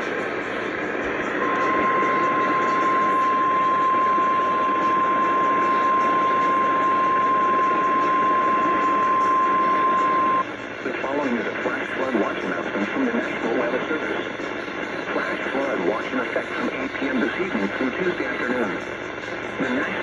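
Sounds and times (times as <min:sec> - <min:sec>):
radio reception hiss: 0:00.0 - 0:20.0
steady high alarm tone: 0:01.0 - 0:10.4.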